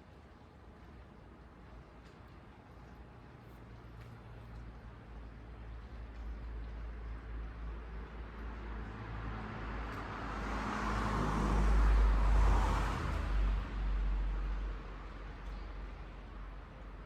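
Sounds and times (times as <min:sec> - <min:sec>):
road vehicle passing: 0:06.3 - 0:16.0.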